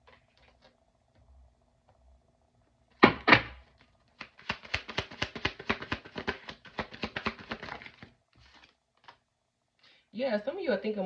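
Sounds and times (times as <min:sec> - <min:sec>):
cards slapping while shuffled: 0:03.2 - 0:09.2
cards swishing: 0:04.2 - 0:09.2.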